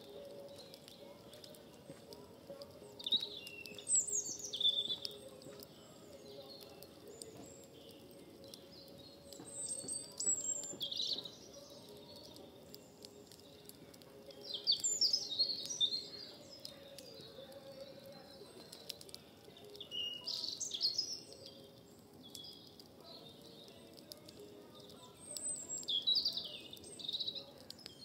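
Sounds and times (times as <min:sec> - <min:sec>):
songbird chirping: 0:00.0 - 0:28.0.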